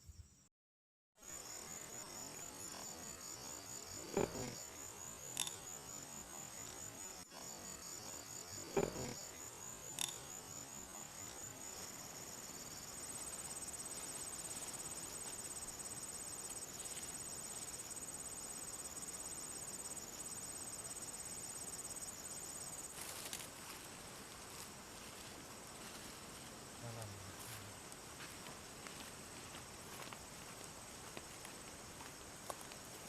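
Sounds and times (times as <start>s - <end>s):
high-pitched insect chirring: 1.2s - 23.3s
faint outdoor hiss: 1.2s - 33.0s.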